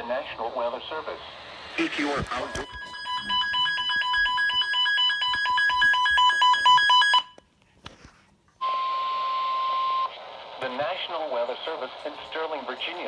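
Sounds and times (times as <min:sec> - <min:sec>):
buzzy electronic beeping: 0:01.8 - 0:06.6.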